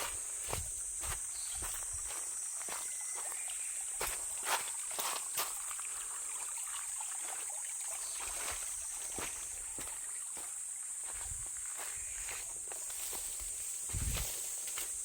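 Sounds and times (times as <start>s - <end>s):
high-pitched insect buzz: 0.0s - 4.7s, 10.4s - 15.0s
stream water running: 0.0s - 15.0s.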